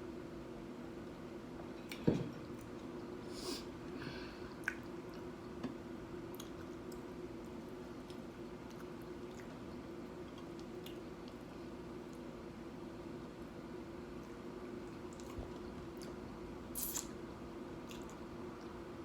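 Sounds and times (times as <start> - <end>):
wet chewing with crunches: 6.3 - 11.5, 17.8 - 18.8.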